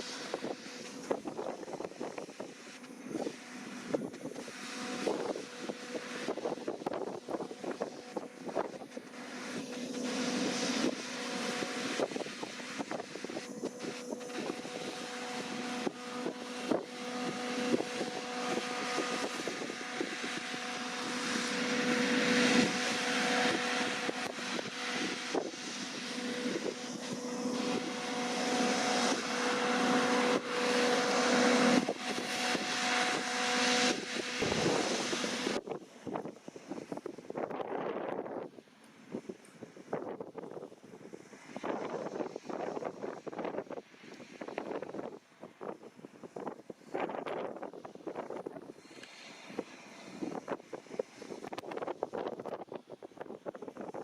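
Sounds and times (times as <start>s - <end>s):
rushing crackling noise: 0.0s - 37.7s
combine harvester hum: 0.0s - 39.8s.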